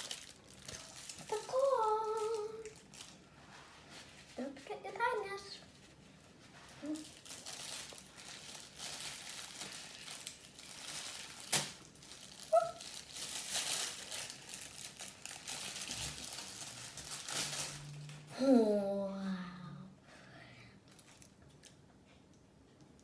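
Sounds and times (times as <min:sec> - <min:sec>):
wrapping crinkling: 0:00.0 - 0:18.3, 0:20.9 - 0:21.8.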